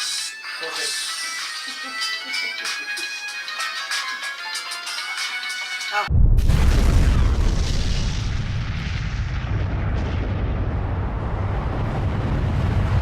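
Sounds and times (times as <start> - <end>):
explosion rumbling roar: 6.1 - 13.0.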